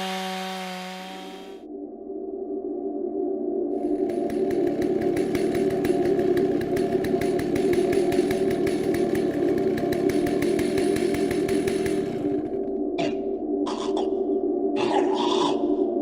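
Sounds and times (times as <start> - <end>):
chainsaw running: 0.0 - 1.6, 3.8 - 12.8.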